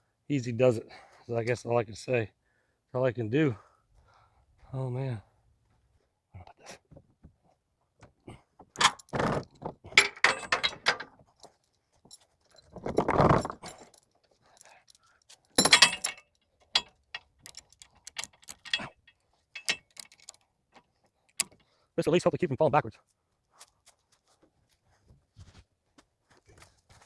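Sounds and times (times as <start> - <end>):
chain scraping: 8.8 - 20.5
metal chain rattling: 8.8 - 20.5.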